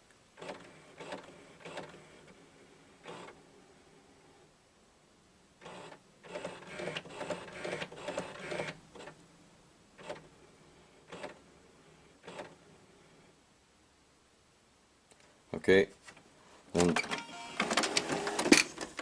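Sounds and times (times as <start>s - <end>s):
printer motor whirring and clicking: 0.4s - 2.4s, 3.0s - 3.4s, 5.6s - 9.2s, 11.1s - 11.4s, 12.2s - 12.6s, 17.0s - 19.0s
short printer whirs: 0.4s - 2.4s, 3.0s - 3.4s, 5.6s - 9.2s, 11.1s - 11.4s, 12.2s - 12.6s, 17.0s - 19.0s.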